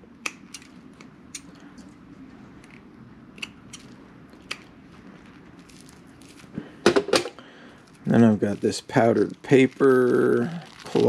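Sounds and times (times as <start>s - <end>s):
foil shield crinkling: 4.9s - 6.8s, 7.4s - 11.0s.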